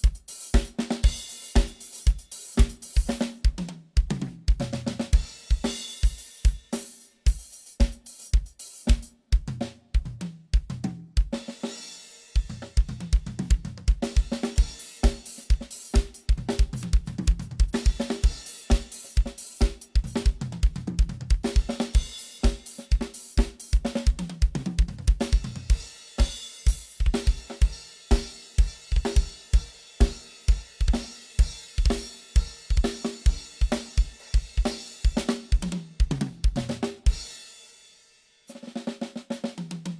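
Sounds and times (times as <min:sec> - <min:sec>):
bass drum beat: 0:00.0 - 0:05.8, 0:07.3 - 0:11.4, 0:12.4 - 0:22.1, 0:23.0 - 0:25.8, 0:32.7 - 0:37.1
drum kit groove: 0:00.0 - 0:37.9, 0:38.5 - 0:39.9.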